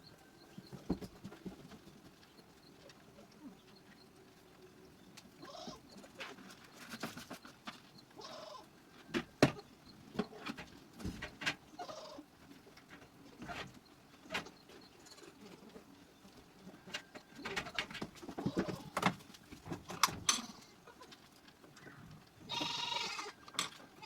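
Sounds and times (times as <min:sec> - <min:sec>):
knocks and bumps in barn: 0:00.5 - 0:02.2, 0:09.0 - 0:11.8, 0:16.8 - 0:20.6
goats bleating: 0:22.4 - 0:23.4.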